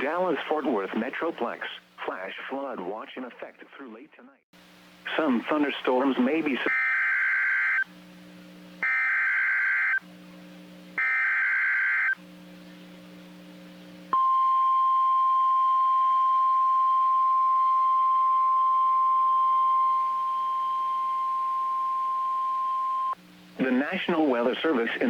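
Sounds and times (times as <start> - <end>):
buzzy warbling data bursts: 5.2 - 7.8, 8.8 - 10.0, 11.0 - 12.2
steady alarm tone: 6.7 - 7.9, 8.8 - 10.0, 11.0 - 12.2, 14.1 - 23.2.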